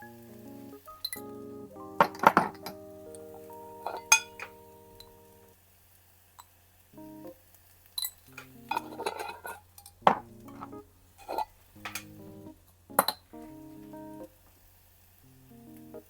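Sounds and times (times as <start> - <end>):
soft background music: 0.0 - 5.6, 7.0 - 7.4, 8.4 - 9.4, 10.1 - 14.4, 15.3 - 16.0
utensils clinking against dishes: 3.9 - 4.6, 8.0 - 12.1.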